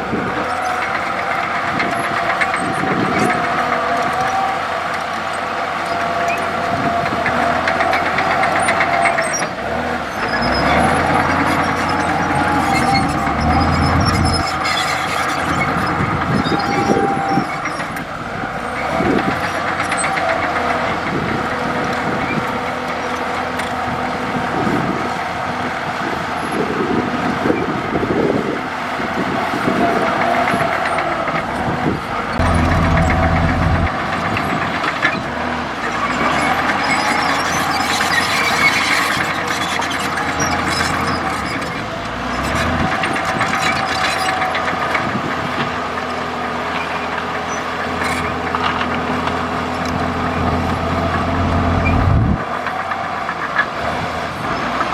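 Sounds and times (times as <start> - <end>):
bulldozer diesel engine: 0.0 - 54.9
high metallic squeal: 5.9 - 20.8, 29.7 - 35.3, 35.9 - 44.9, 51.0 - 52.9
steel tracks clanking: 29.0 - 45.8.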